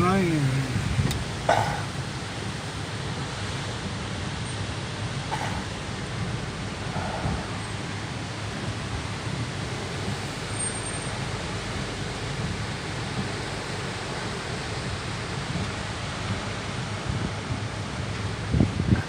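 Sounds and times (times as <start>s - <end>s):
hurricane wind driving rain: 0.0s - 19.0s.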